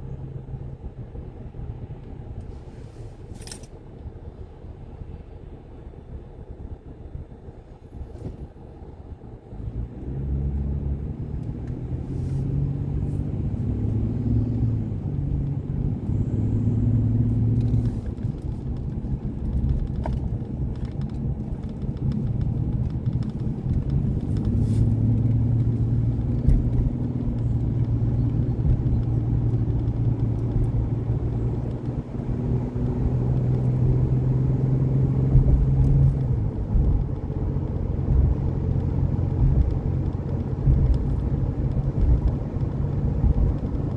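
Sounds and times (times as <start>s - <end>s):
road rumble: 0.0s - 43.9s
vehicle engine: 0.0s - 43.9s.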